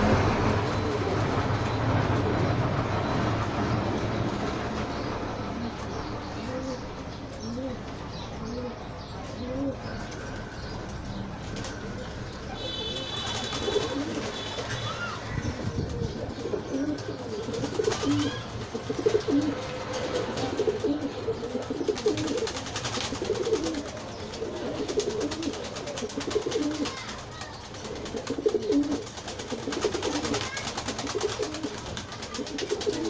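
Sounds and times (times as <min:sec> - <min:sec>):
birds cooing: 0:00.0 - 0:33.0
high-pitched bird call: 0:09.4 - 0:15.8.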